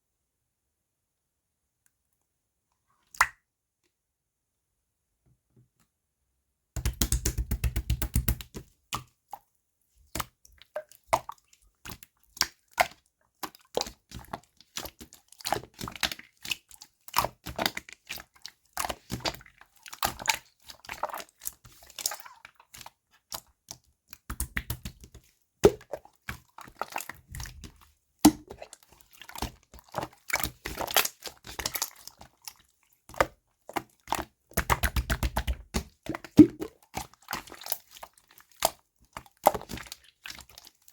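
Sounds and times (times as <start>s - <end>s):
slime clicking and popping: 6.8s - 8.5s.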